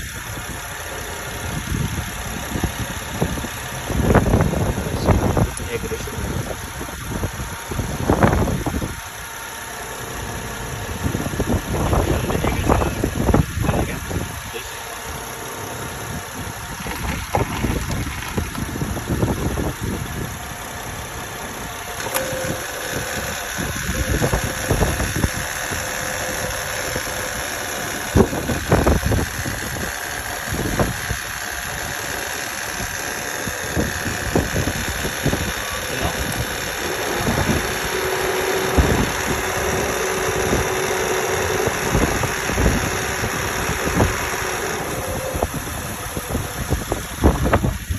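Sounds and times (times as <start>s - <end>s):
car engine idling: 0.0s - 47.9s
low engine knocks: 36.2s - 40.7s.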